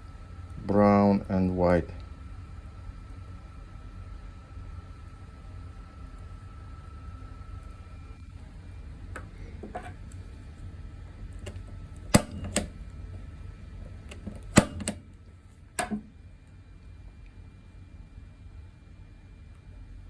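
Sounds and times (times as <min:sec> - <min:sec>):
punch-down tool snaps: 0:11.4 - 0:12.8, 0:14.1 - 0:15.1, 0:15.8 - 0:16.1.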